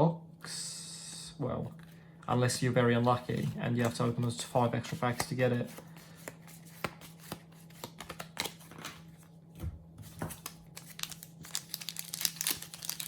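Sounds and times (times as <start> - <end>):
cards clicking and rustling: 3.0 - 9.2, 10.0 - 13.0.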